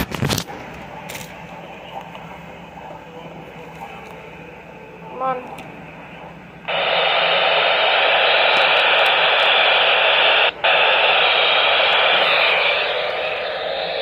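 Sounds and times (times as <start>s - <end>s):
radio static hiss: 6.7s - 14.0s.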